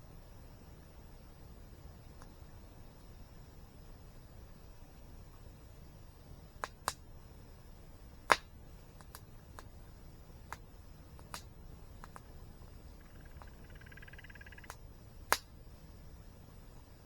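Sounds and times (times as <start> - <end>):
faint steady hiss: 0.0 - 17.0
campfire crackling and popping: 6.4 - 13.7, 14.3 - 15.9.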